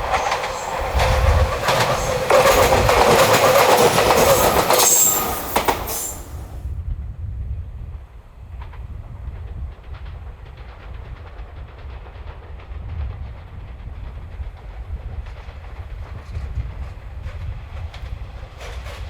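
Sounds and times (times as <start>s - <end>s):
wheels clicking over rail joints: 0.0s - 6.6s
train rumbling past: 0.0s - 19.0s.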